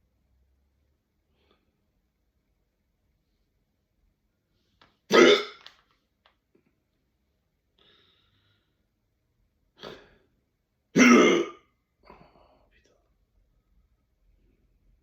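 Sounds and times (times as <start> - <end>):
person hiccuping loudly: 5.1 - 5.7, 11.0 - 11.6.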